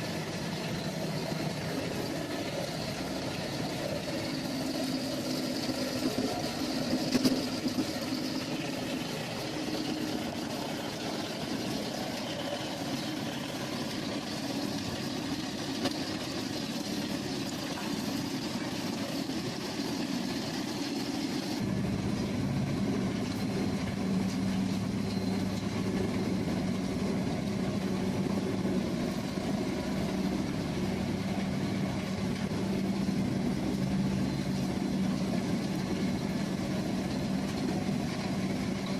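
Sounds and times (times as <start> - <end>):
heavy machinery engines running: 0.0 - 38.9
deep engine hum: 21.6 - 38.9.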